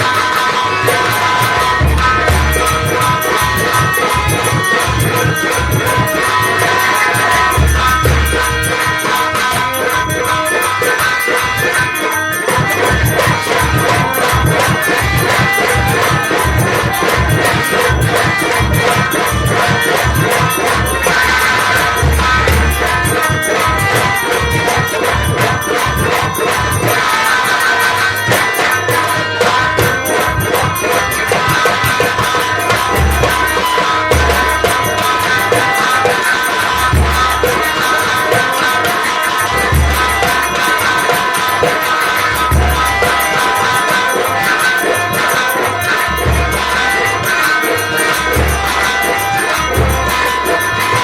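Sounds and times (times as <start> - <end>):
jingling percussion: 0.0 - 51.0
rapid drum strokes: 0.0 - 51.0.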